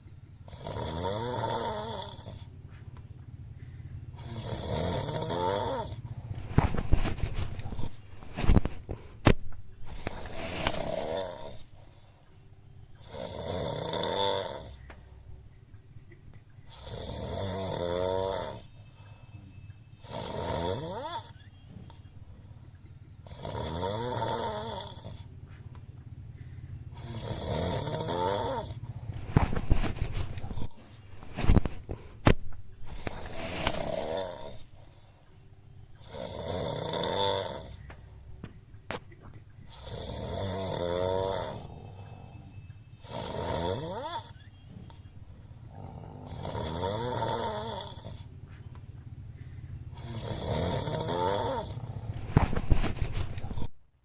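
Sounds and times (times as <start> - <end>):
person snoring: 0.5 - 2.5, 4.2 - 9.2, 9.9 - 11.8, 13.0 - 14.8, 16.7 - 18.7, 20.0 - 21.4, 23.2 - 25.3, 26.9 - 34.8, 36.0 - 37.9, 39.7 - 45.0, 45.7 - 48.3, 49.5 - 53.7.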